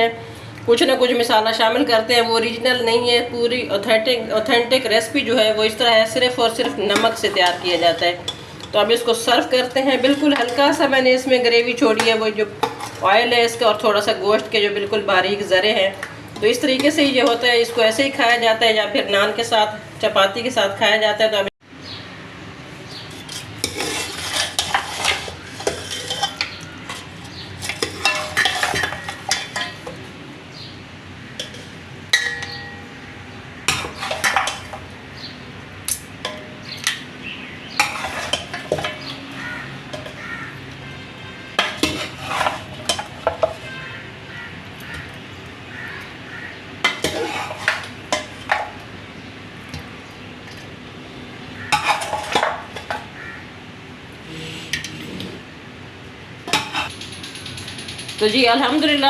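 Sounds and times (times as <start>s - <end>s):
metal spoon scraping a pot: 6.1s - 14.1s, 22.9s - 30.0s, 31.3s - 32.9s, 33.6s - 34.8s, 37.7s - 40.6s, 41.5s - 43.9s, 46.8s - 48.6s, 51.6s - 53.2s, 56.5s - 58.4s.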